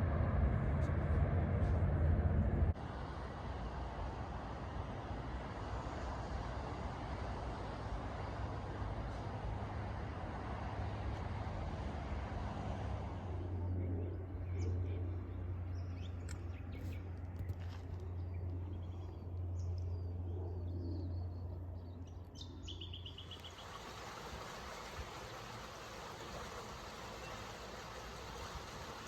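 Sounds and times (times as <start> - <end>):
distant road traffic rumble: 0.0 - 29.0
bird chirps: 20.8 - 23.6.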